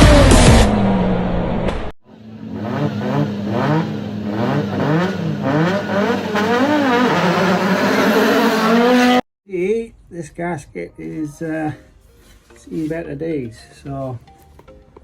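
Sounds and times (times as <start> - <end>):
car engine revving: 0.0 - 9.2.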